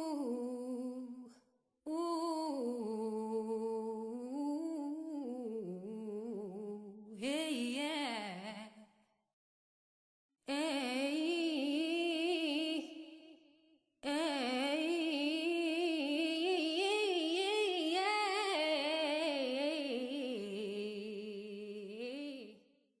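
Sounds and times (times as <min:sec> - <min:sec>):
woman singing wordless melody: 0:00.0 - 0:08.8, 0:10.5 - 0:13.4, 0:14.0 - 0:22.6.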